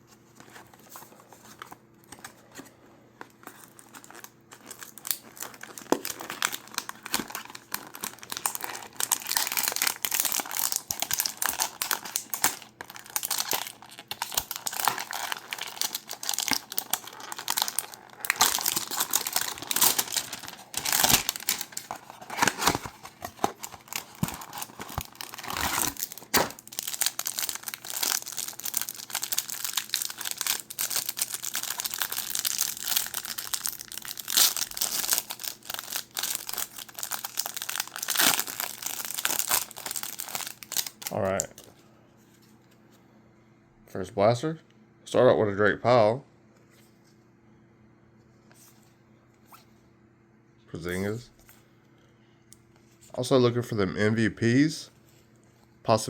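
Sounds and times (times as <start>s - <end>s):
packaging tearing and crinkling: 3.4s - 41.7s.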